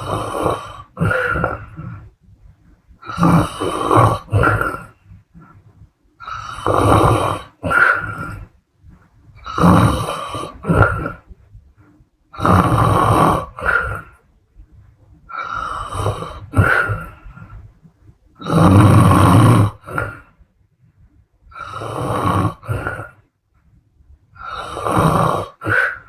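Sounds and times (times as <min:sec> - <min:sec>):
woman snoring: 0:00.0 - 0:02.0, 0:03.0 - 0:05.0, 0:06.2 - 0:08.5, 0:09.4 - 0:11.2, 0:12.4 - 0:14.2, 0:15.4 - 0:17.2, 0:18.4 - 0:20.2, 0:21.5 - 0:23.2, 0:24.4 - 0:26.0.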